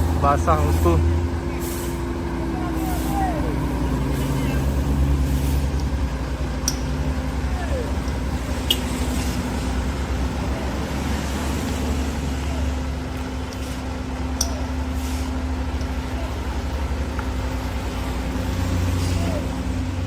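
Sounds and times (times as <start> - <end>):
truck diesel engine labouring: 0.0 - 20.0
sharp clicks: 6.6 - 7.0.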